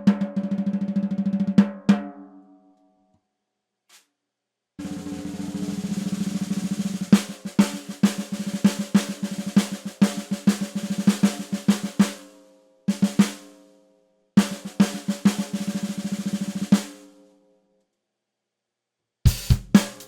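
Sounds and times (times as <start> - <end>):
snare drum played with sticks: 4.8 - 12.2, 12.9 - 13.5, 14.4 - 17.0, 19.3 - 20.0.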